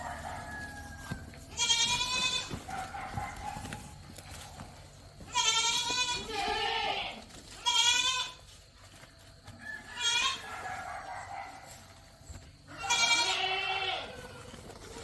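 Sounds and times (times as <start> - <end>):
goats bleating: 0.0 - 3.0, 5.2 - 8.5, 9.9 - 10.5, 12.7 - 15.0.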